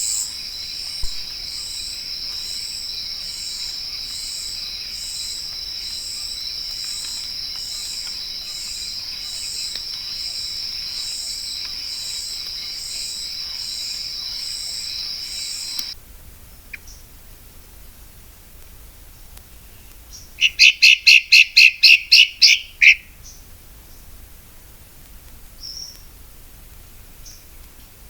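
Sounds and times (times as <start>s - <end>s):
insects chorus: 0.0s - 16.0s.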